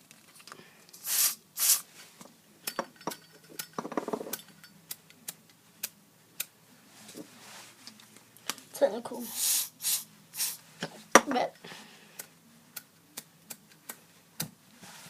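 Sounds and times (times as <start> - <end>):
lighter hissing scrapes: 0.9 - 1.8, 9.2 - 10.6.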